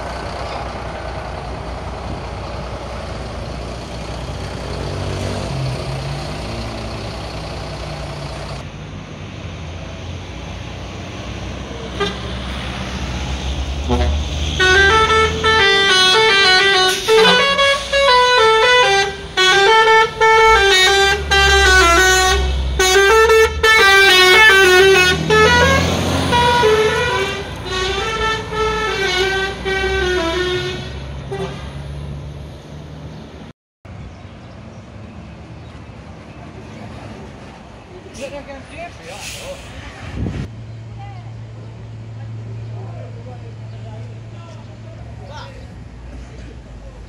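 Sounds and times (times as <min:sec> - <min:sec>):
bus engine rumble: 0:00.0 - 0:47.0
road noise: 0:00.0 - 0:47.0
bus horn playing multi-tone blasts: 0:11.9 - 0:12.5, 0:13.8 - 0:31.8.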